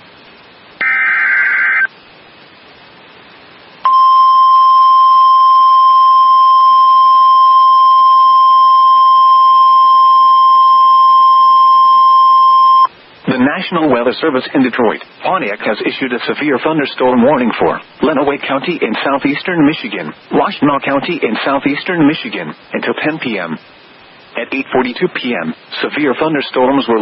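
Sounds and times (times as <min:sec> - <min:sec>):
radio hiss: 0:00.0 - 0:03.9, 0:12.5 - 0:27.0
warbling data burst: 0:00.8 - 0:01.9
steady alarm beep: 0:03.8 - 0:12.9.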